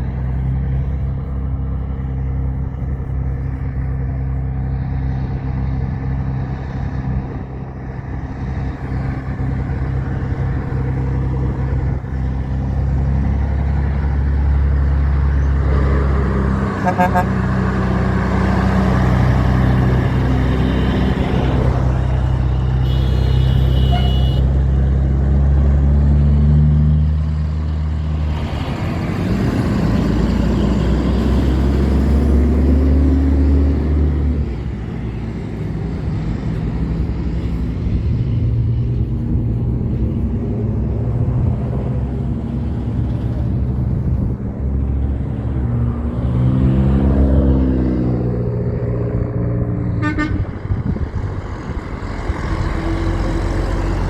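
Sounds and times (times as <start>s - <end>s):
diesel trucks passing: 0.0s - 54.0s
light traffic: 0.0s - 54.0s
truck engine accelerating: 0.0s - 54.0s
air horn: 16.8s - 17.5s, 22.8s - 24.6s, 50.0s - 50.6s.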